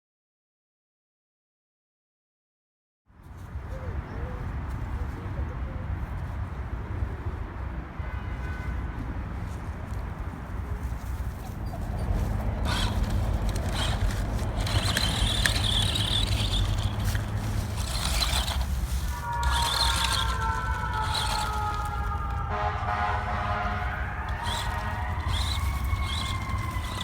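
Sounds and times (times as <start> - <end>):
tyres churning over dirt: 10.6 - 27.0
electric motor whining: 11.6 - 27.0.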